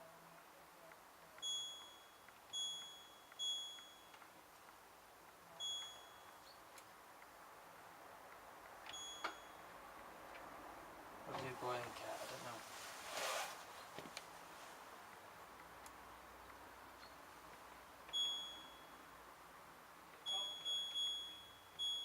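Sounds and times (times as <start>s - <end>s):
high-pitched control panel beeps: 5.6s - 6.4s, 18.1s - 19.0s, 20.2s - 22.0s.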